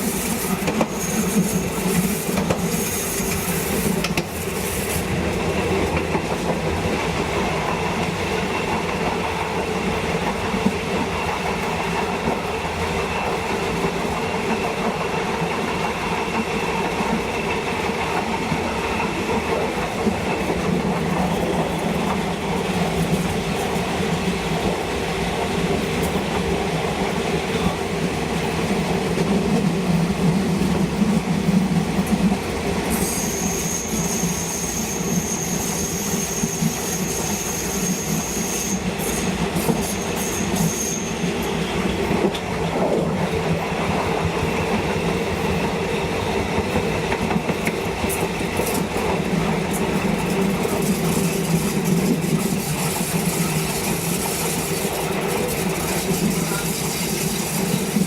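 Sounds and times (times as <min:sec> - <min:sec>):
train wheels rumbling on track: 0:00.0 - 0:58.0
high wheel squeal: 0:00.9 - 0:03.6, 0:32.9 - 0:42.0.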